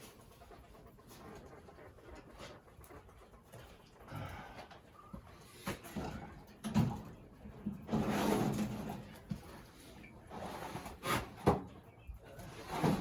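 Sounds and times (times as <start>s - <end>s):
sliding scrape: 7.9s - 9.1s, 9.8s - 11.5s, 12.4s - 13.0s.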